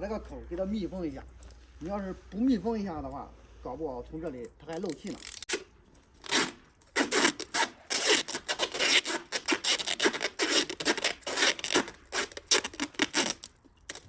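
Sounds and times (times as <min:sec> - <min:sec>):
tape ripping off roll: 0:04.7 - 0:14.0.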